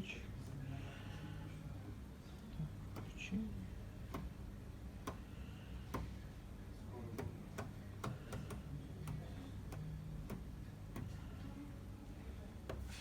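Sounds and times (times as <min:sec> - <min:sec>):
washing machine control panel clicks: 0:04.1 - 0:04.4, 0:07.1 - 0:11.1.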